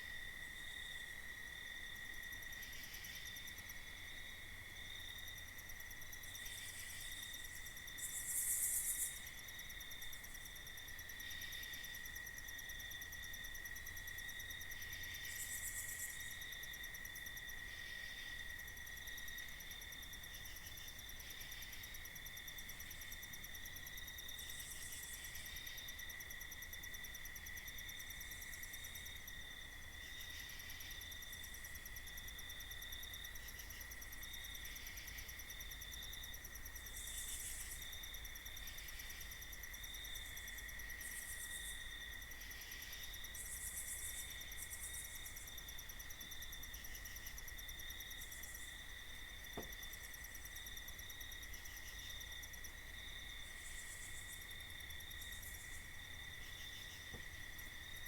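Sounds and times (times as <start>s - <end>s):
crickets trilling: 0.0s - 58.0s
high insect calls: 6.3s - 9.6s.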